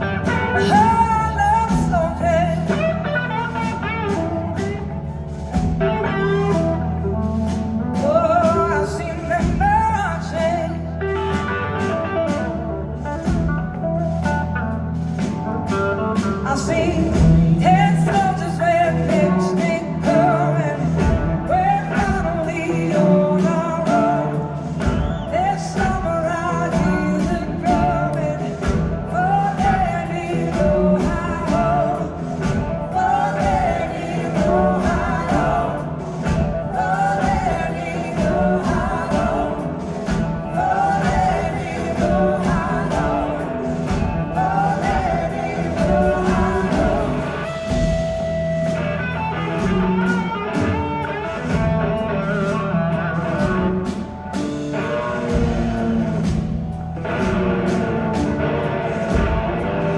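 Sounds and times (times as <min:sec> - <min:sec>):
person singing lead vocal: 0:00.0 - 0:04.9, 0:05.5 - 0:14.3, 0:15.2 - 0:59.9
bass guitar: 0:00.0 - 0:59.9
drums: 0:00.0 - 0:59.9
electric guitar: 0:00.0 - 0:59.9.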